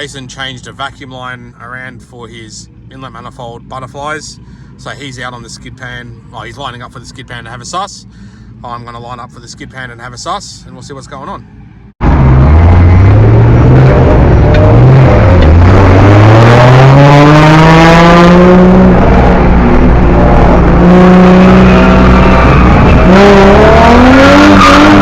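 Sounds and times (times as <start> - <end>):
car engine revving hard: 12.0 - 25.0.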